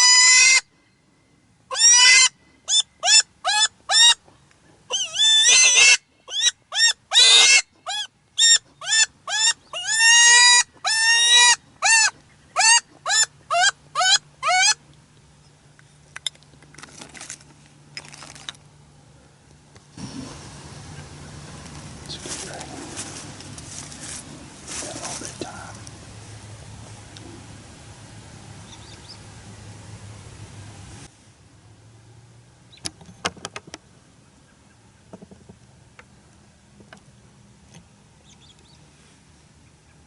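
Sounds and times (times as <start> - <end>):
high wavering squeals of predator call: 4.9 - 14.8.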